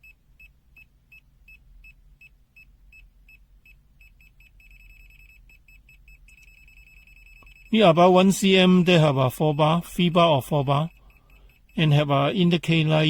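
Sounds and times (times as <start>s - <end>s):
multimeter buzzer beeping: 3.7s - 13.0s.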